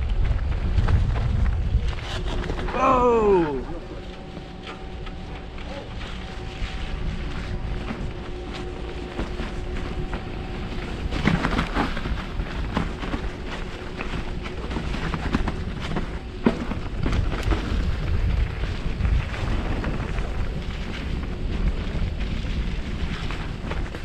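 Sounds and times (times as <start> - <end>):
wind buffeting microphone: 0.0 - 24.0
bike knocks and rattles: 11.1 - 24.0.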